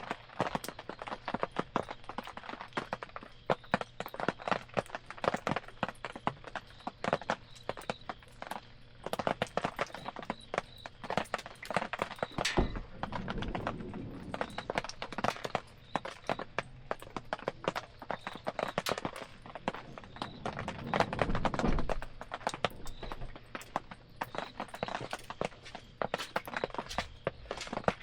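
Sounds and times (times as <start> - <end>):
campfire crackling: 0.0 - 28.0
sharp snaps and pops: 0.0 - 28.0
low rumbles: 12.3 - 17.4, 18.0 - 23.6.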